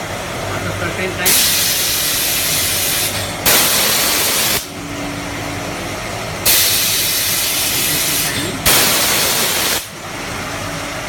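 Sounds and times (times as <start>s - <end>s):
washing machine loud hiss: 0.9s - 4.8s, 6.4s - 10.0s.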